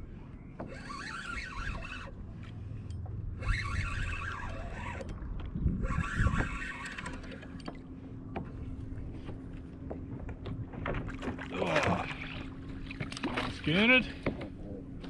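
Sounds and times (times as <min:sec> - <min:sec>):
fishing reel cranking: 0:00.6 - 0:02.2, 0:03.4 - 0:05.2, 0:05.8 - 0:07.7.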